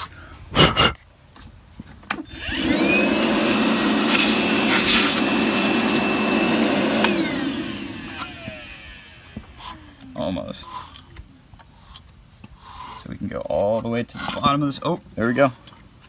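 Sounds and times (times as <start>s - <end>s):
vacuum cleaner motor whining: 2.2s - 10.4s.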